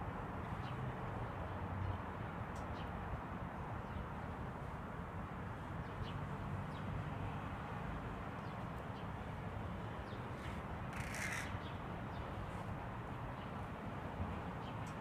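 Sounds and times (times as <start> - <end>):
outdoor background noise: 0.0 - 15.0
harsh bird call: 10.9 - 11.6.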